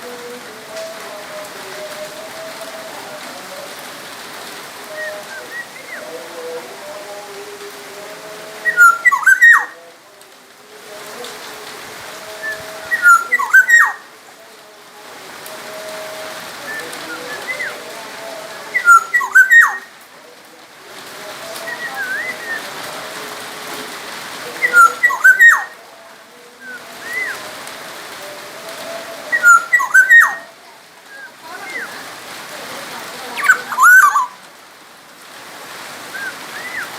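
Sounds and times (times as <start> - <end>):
background hiss: 0.0 - 36.9
bird fluty whistled song: 5.0 - 6.1, 8.6 - 9.8, 12.4 - 14.0, 16.7 - 17.8, 18.7 - 19.9, 21.6 - 22.6, 24.6 - 25.7, 26.6 - 27.4, 29.3 - 30.4, 33.4 - 34.4, 36.1 - 36.9.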